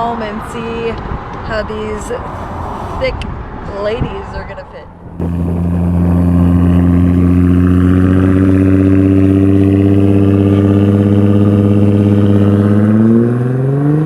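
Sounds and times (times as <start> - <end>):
car engine revving under load: 2.0 - 3.9, 4.9 - 14.0.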